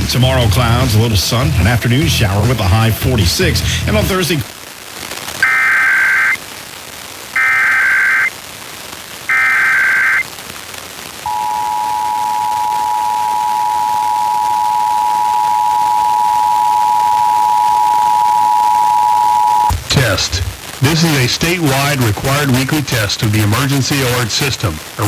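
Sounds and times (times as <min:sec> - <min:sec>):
digital warble bursts: 0:09.3 - 0:10.2
two-tone alert signal: 0:09.3 - 0:10.2, 0:11.3 - 0:19.7.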